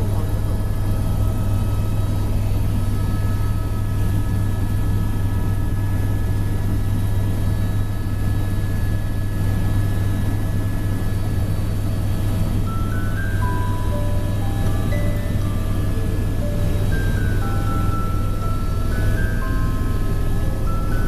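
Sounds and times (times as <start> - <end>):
helicopter engine and rotor drone: 0.0 - 21.0.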